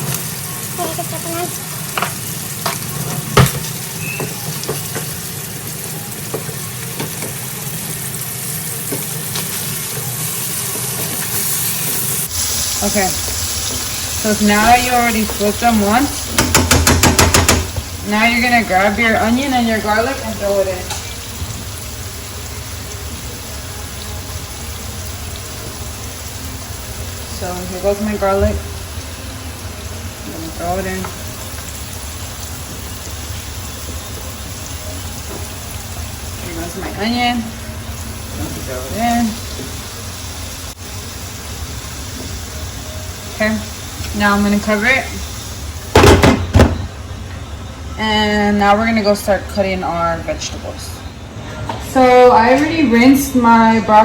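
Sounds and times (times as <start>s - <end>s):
chicken sizzling in a frying pan: 0.0s - 47.1s
loud knock: 16.4s - 17.8s, 46.0s - 46.9s.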